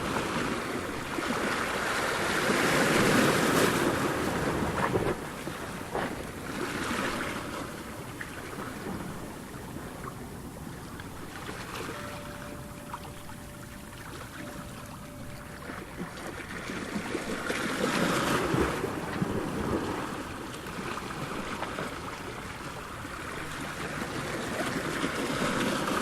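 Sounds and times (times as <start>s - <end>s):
ocean surf washing ashore: 0.0s - 26.0s
wind on microphone: 0.0s - 26.0s.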